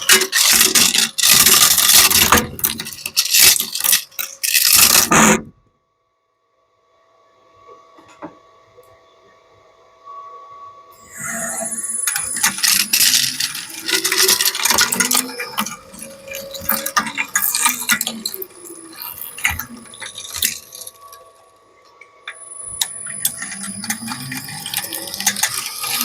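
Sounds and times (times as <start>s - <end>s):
shredder cracking plastic and metal: 0.0s - 5.5s, 12.1s - 21.4s, 22.3s - 26.0s
squealing grinding: 11.0s - 21.4s, 22.3s - 26.0s.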